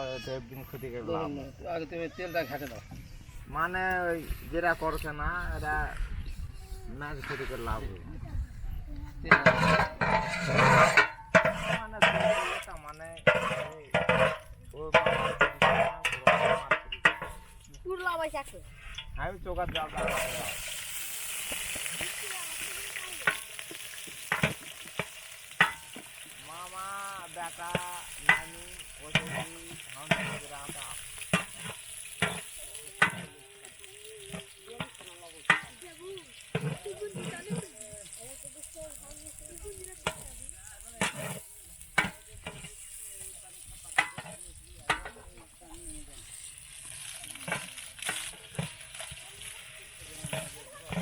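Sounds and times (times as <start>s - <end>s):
food sizzling in hot oil: 9.2s - 51.0s
ladle knocking and scraping pot: 9.3s - 17.8s, 18.7s - 38.7s, 39.4s - 51.0s.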